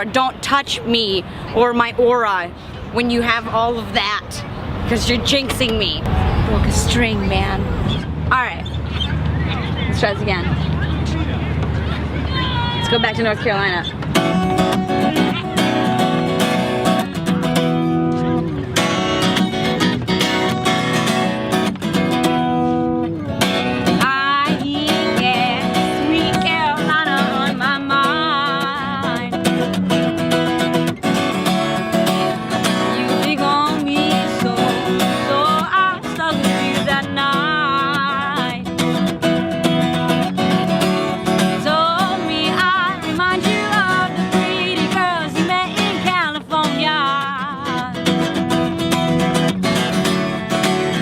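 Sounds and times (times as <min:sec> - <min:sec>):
acoustic guitar strumming: 0:03.0 - 0:51.0
woman singing: 0:23.9 - 0:29.7, 0:32.6 - 0:39.0, 0:41.4 - 0:48.4.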